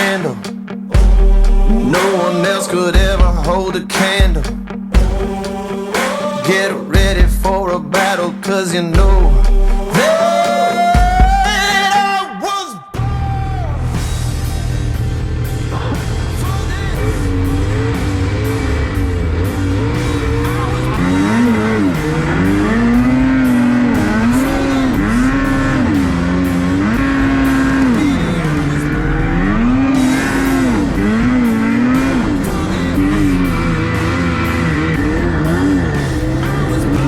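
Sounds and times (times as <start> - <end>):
rock music: 0.0 - 37.0
snowmobile engine revving: 13.1 - 37.0.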